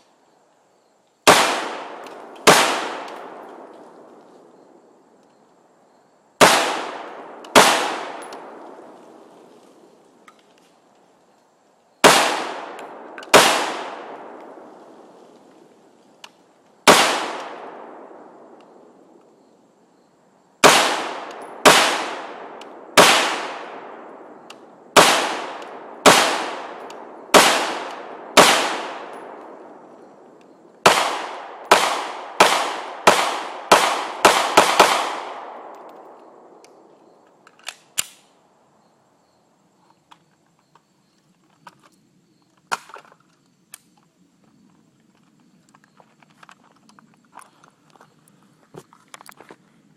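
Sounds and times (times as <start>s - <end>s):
gunshots with echoing tail: 1.3s - 3.7s, 6.4s - 9.0s, 12.0s - 14.8s, 16.9s - 18.6s, 20.6s - 29.9s, 30.8s - 36.6s
small clicks: 39.8s - 49.5s.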